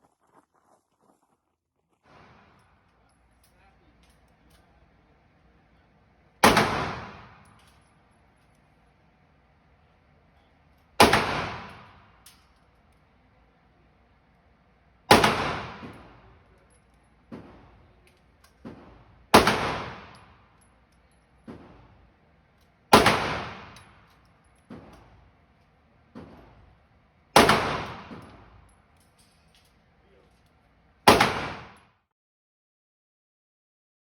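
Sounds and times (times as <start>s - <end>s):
fainter gunshots: 6.4s - 7.4s, 11.0s - 12.1s, 15.1s - 16.2s, 18.7s - 20.4s, 22.9s - 23.8s, 27.4s - 28.4s, 31.1s - 31.8s
handgun shots echoing: 6.4s - 7.8s, 11.0s - 12.5s, 15.1s - 16.2s, 18.4s - 20.4s, 22.9s - 25.1s, 27.4s - 28.5s, 31.1s - 31.8s.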